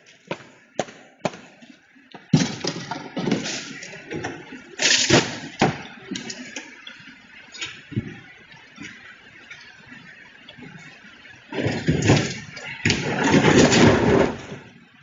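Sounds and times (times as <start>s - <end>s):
trash rustling and thuds: 11.5s - 14.7s.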